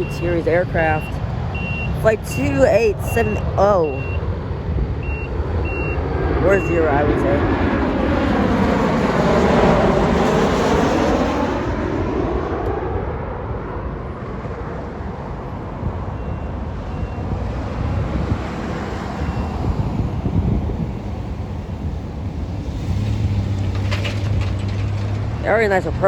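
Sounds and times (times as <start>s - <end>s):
jet airliner passing: 0.0s - 23.7s
wind noise on microphone: 12.9s - 26.0s.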